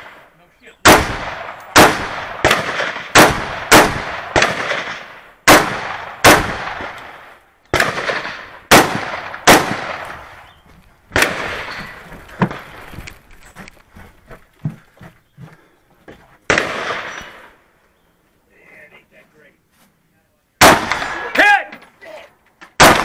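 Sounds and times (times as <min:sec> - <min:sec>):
rifle shots echoing: 0:00.0 - 0:10.4, 0:11.1 - 0:12.7, 0:16.5 - 0:17.6, 0:20.6 - 0:21.4, 0:22.8 - 0:23.0.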